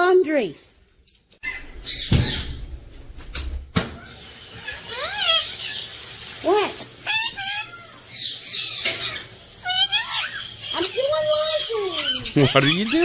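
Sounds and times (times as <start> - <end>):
parakeets chattering and squawking: 1.4 - 2.8, 4.0 - 13.0.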